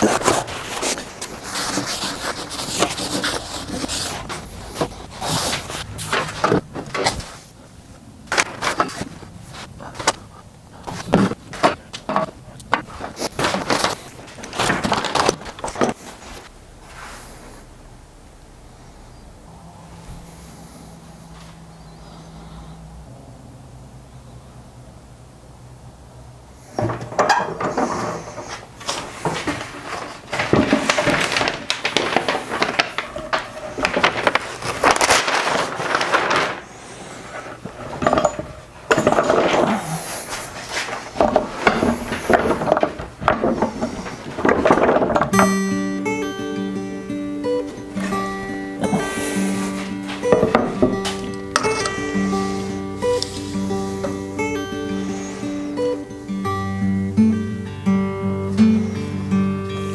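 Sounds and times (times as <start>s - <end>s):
knocks and scrapes on wood: 0.0s - 7.5s, 26.8s - 35.9s, 37.4s - 45.6s, 48.0s - 54.5s.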